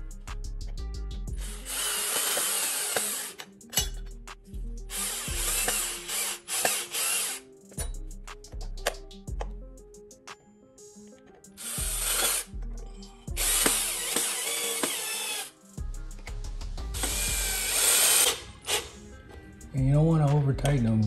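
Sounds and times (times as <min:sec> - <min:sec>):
cordless drill driving screws: 0:01.4 - 0:03.9, 0:04.9 - 0:07.4, 0:11.6 - 0:12.5, 0:13.4 - 0:15.5, 0:17.0 - 0:18.9.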